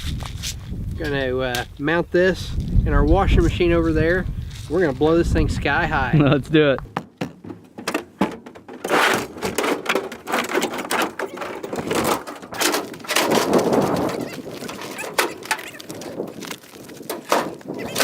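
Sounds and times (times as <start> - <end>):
irregular knocks and thuds: 6.8 - 17.9
scraping noises: 7.4 - 18.0.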